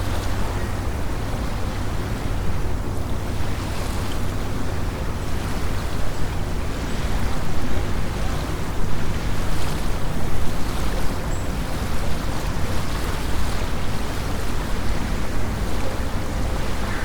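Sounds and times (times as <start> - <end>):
waves lapping on shore: 0.0 - 17.0
wind blowing over microphone: 12.6 - 17.0.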